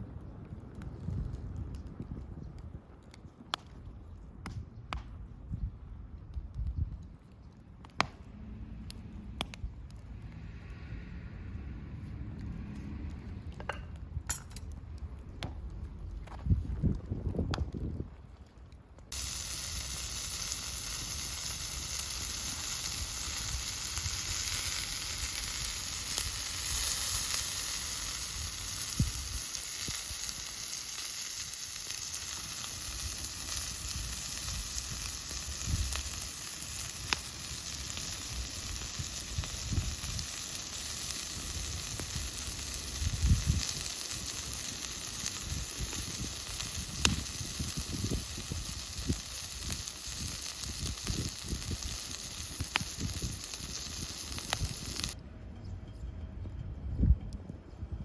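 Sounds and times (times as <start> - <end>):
campfire crackles: 0.0 - 55.2
food sizzling on iron griddle: 19.1 - 55.2.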